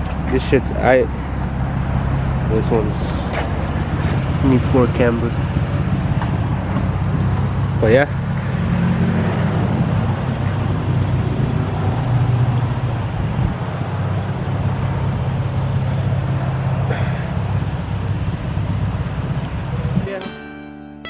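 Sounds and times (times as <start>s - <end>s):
car engine running: 0.0s - 20.1s.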